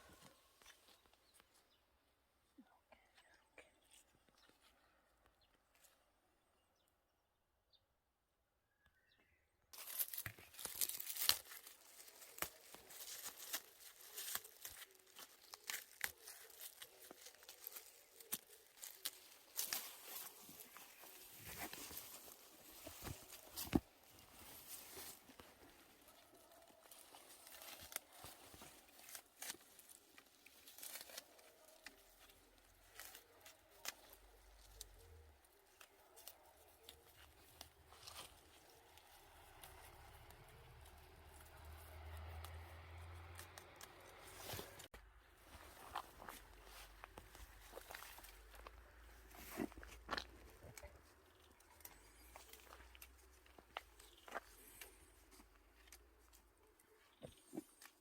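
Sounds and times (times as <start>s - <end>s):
leaves snapping when picked: 9.8s - 34.9s.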